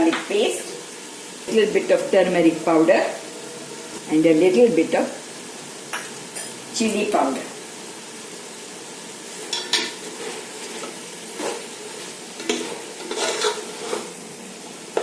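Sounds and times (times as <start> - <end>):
food sizzling in oil: 0.0 - 15.0
utensil scraping pan: 9.4 - 14.3.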